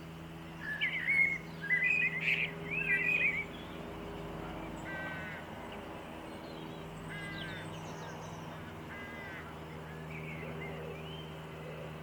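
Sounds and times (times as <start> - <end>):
steady low hum: 0.0 - 12.0
small birds chirping: 0.4 - 12.0
crow cawing: 4.8 - 5.5, 7.1 - 7.7, 8.5 - 9.6.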